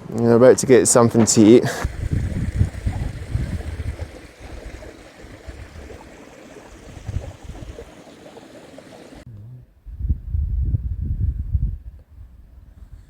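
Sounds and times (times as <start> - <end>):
wind buffeting microphone: 1.7 - 9.0, 9.8 - 13.0.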